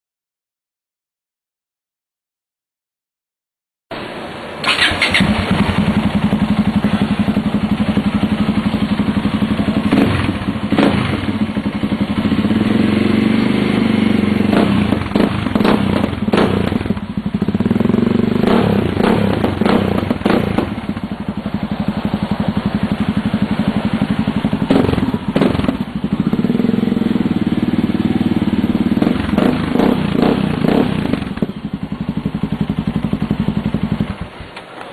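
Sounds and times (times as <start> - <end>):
sharp exhaust cracks: 4.6 - 6.7
motorcycle engine running: 4.6 - 34.7.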